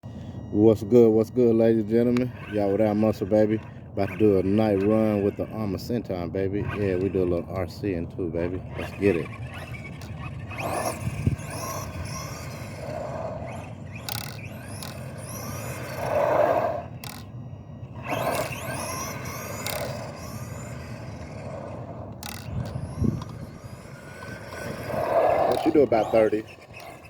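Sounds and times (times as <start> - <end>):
electric motor whining: 0.0 - 27.0
tyres scraping on ground: 8.7 - 17.3, 17.9 - 27.0.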